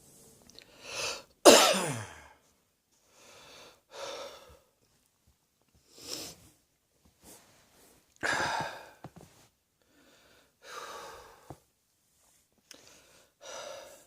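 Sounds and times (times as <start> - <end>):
person coughing: 1.4 - 2.4
heavy gasping breaths: 8.2 - 9.1, 12.7 - 14.0.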